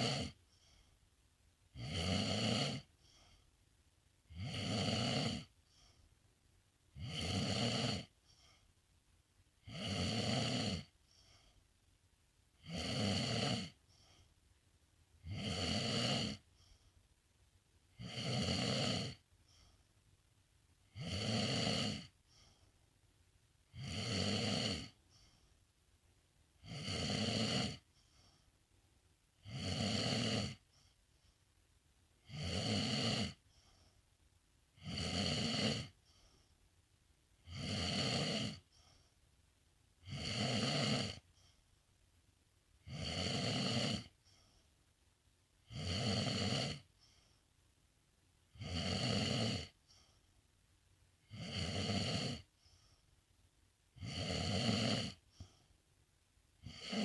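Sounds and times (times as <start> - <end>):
pet snoring: 0.0 - 0.8, 1.7 - 3.4, 4.3 - 6.0, 6.9 - 8.6, 9.6 - 11.5, 12.6 - 14.2, 15.2 - 16.8, 17.9 - 19.7, 20.8 - 22.6, 23.7 - 25.4, 26.6 - 28.4, 29.4 - 30.9, 32.2 - 33.9, 34.8 - 36.4, 37.4 - 39.0, 40.0 - 41.6, 42.8 - 44.5, 45.6 - 47.3, 48.5 - 50.1, 51.2 - 53.0, 54.0 - 55.7, 56.6 - 57.0.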